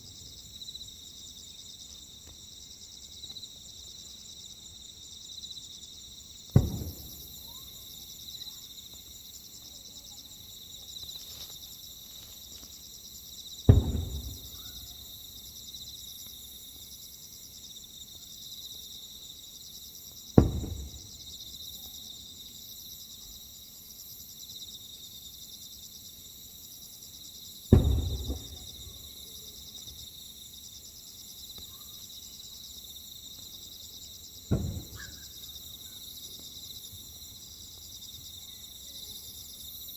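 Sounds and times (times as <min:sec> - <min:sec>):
crickets chirring: 0:00.0 - 0:39.9
firework shells booming: 0:06.5 - 0:07.8, 0:13.7 - 0:15.5, 0:20.4 - 0:21.4, 0:27.7 - 0:29.2, 0:34.5 - 0:35.4.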